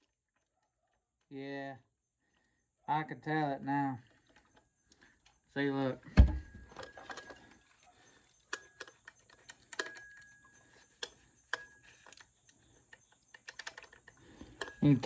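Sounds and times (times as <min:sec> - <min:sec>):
metallic clicks and rattles: 0:06.5 - 0:15.0.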